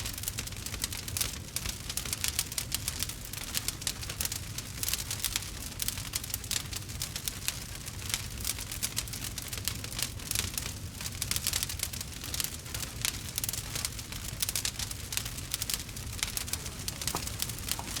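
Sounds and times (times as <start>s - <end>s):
wood fire crackling: 0.9s - 18.0s
low rumble of flame: 10.3s - 18.0s.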